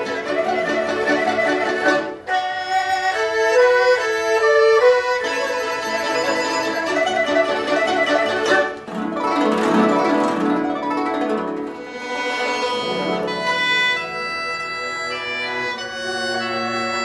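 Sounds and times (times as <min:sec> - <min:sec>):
plucked string instruments: 0:00.0 - 0:17.0
traditional ensemble music: 0:00.0 - 0:17.0.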